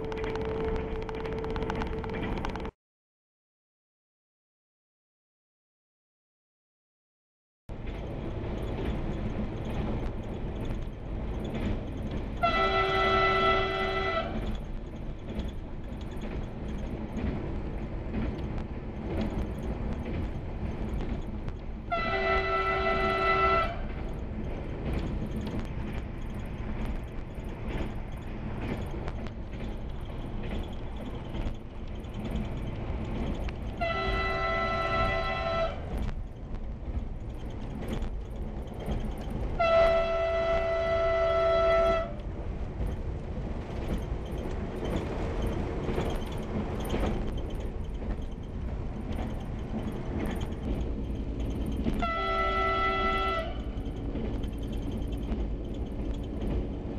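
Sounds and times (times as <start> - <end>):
train horn blasts: 0.0 - 2.2, 12.4 - 14.5, 21.9 - 23.9, 33.8 - 35.9, 39.6 - 42.3, 51.9 - 53.8
train rumbling: 0.0 - 2.8, 7.7 - 56.9.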